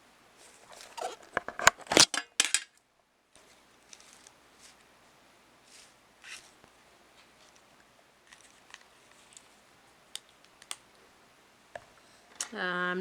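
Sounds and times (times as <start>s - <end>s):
faint rustling of packaging: 0.3s - 2.1s, 3.3s - 11.1s
light clicks of small plastic parts: 8.3s - 11.0s.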